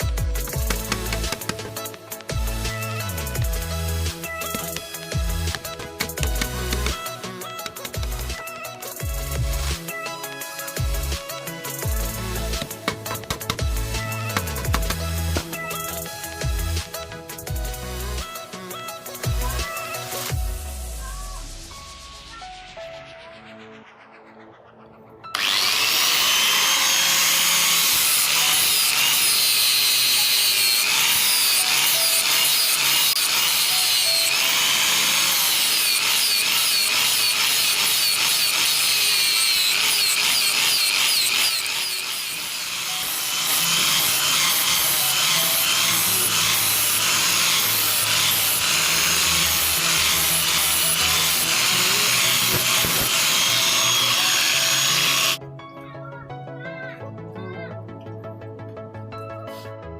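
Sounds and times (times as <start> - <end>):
knife blade being ground: 26.1 - 55.4.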